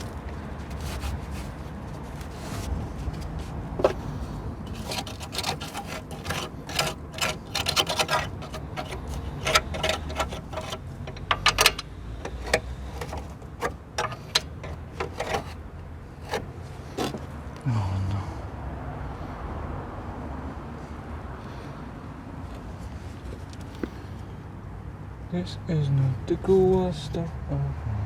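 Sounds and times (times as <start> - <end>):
hand tools clinking on metal: 4.7 - 15.6.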